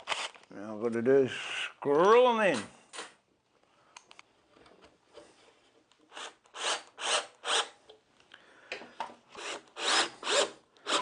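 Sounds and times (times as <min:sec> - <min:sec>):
screwdriver grinding bursts: 0:06.1 - 0:07.8, 0:09.4 - 0:11.0.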